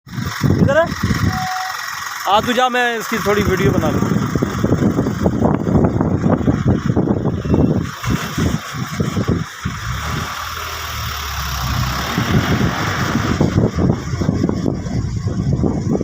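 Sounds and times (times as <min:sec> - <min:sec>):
excavator engine running: 0:00.1 - 0:16.0.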